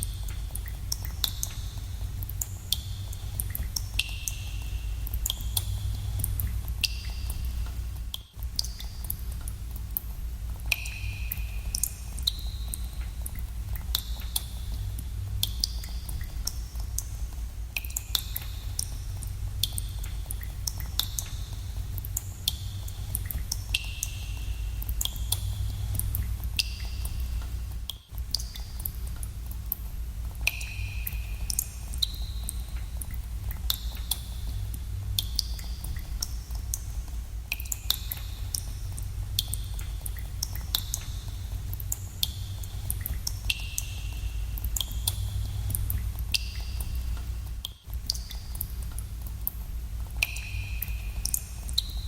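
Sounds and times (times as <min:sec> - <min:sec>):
water drops plinking into pool: 0:10.7 - 0:14.5, 0:30.4 - 0:34.2, 0:37.5 - 0:49.6, 0:50.2 - 0:52.0.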